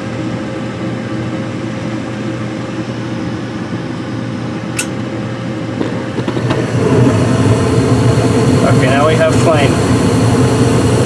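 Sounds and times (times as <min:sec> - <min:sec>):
furnace inducer fan humming: 0:00.0 - 0:11.0
sharp click: 0:04.8 - 0:05.0.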